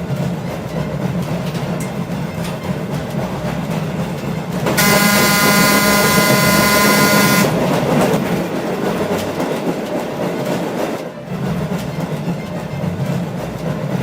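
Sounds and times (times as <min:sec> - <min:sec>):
streetcar rumbling on rails: 0:00.0 - 0:14.0
streetcar horn blast: 0:04.8 - 0:07.7.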